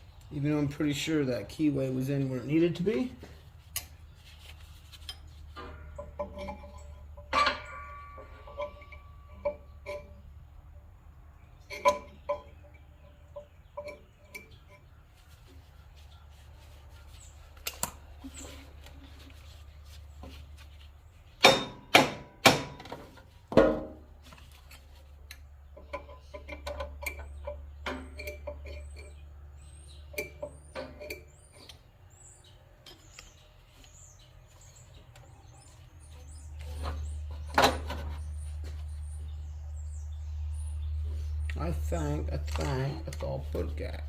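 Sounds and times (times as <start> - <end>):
metal knocks: 5.6 - 10.2.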